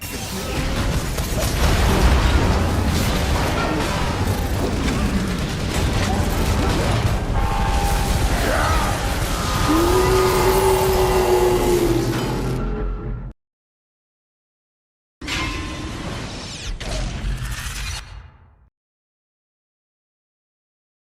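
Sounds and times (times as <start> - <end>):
booms: 0.4 - 11.1.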